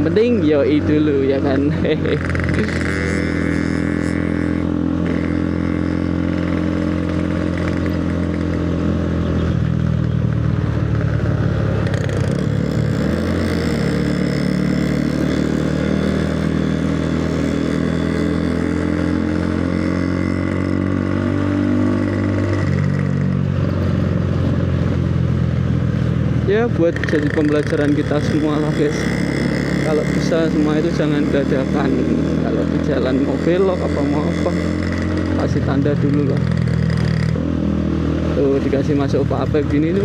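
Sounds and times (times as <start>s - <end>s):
motorcycle engine running: 0.0s - 40.0s.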